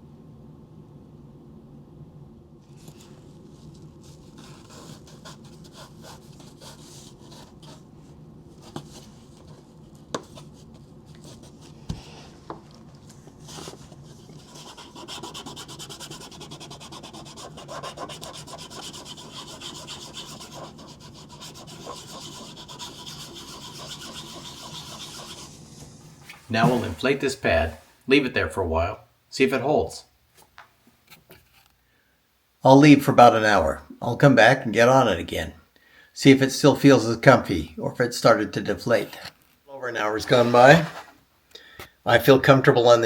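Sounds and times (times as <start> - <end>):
fingers rubbing on fabric: 2.8 - 7.9, 13.3 - 27.0.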